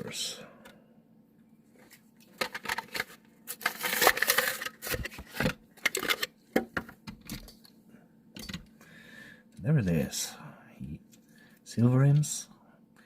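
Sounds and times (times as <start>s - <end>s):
plastic and cardboard crackling: 1.8s - 6.7s.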